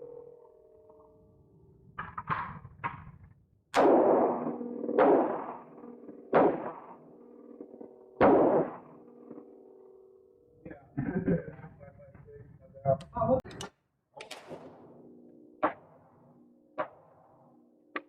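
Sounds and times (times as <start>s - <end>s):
echoing gunshots indoors: 3.8s - 9.6s.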